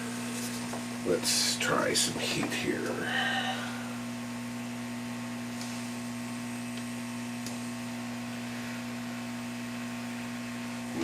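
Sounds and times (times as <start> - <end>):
hot air tool blowing: 2.2 - 4.6.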